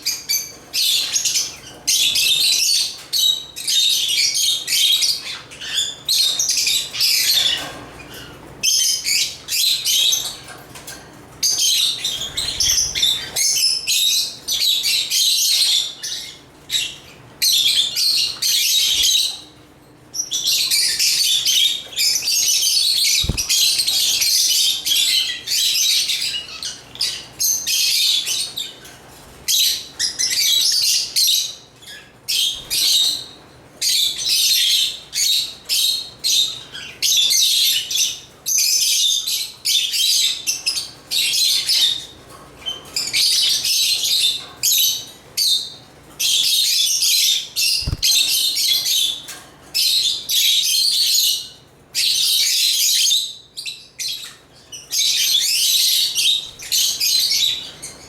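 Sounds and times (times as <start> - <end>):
lovebirds chirping and chattering: 11.4 - 27.8, 43.6 - 49.2.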